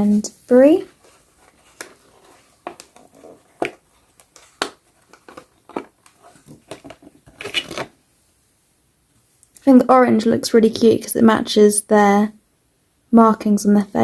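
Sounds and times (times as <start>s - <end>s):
faint packaging rustling: 0.0s - 8.0s.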